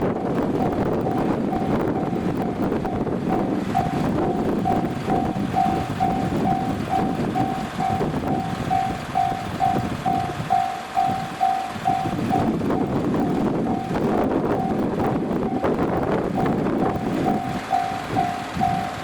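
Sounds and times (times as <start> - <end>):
low rumbling noise: 0.0 - 19.0
level-crossing warning bell: 0.1 - 19.0.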